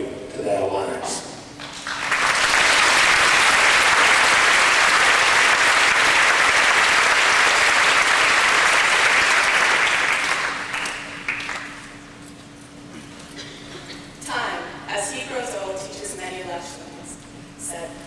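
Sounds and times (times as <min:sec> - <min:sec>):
audience applauding: 0:01.6 - 0:11.9.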